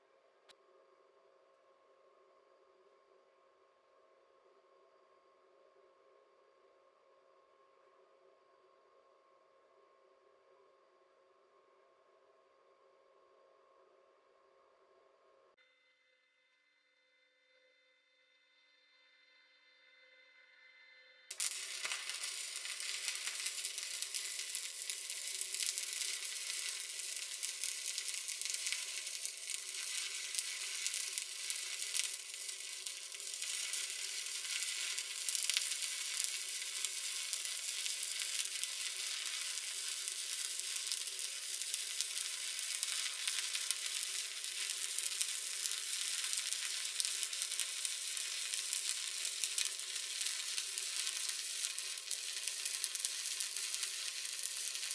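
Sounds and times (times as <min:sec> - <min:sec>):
welding arc crackling and sizzling: 0:21.3 - 0:54.9.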